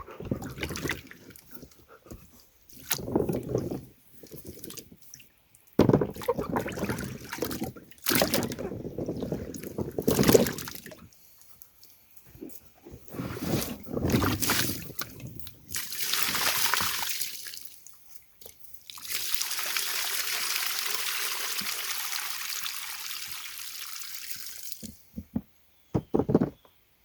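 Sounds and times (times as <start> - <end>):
water sloshing and splashing: 0.0 - 12.0, 13.0 - 20.2.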